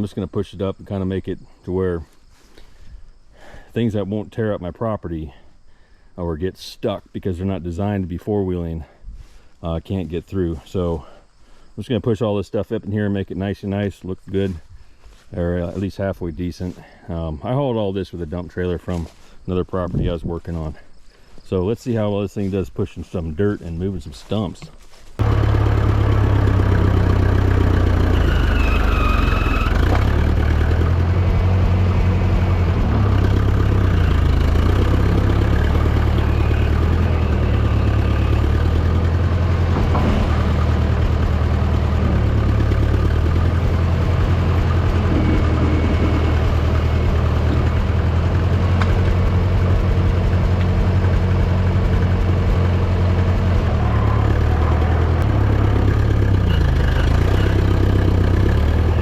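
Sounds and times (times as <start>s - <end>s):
tractor engine running: 21.4s - 59.0s
loader pushing dirt: 21.5s - 59.0s.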